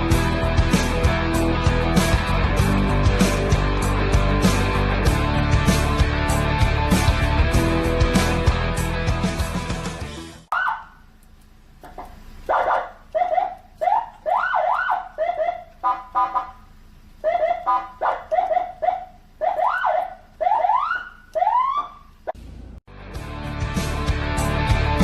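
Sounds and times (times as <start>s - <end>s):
rock music: 0.0s - 10.5s, 22.9s - 25.0s
electronic vehicle siren blasts: 10.5s - 11.1s, 12.5s - 22.2s.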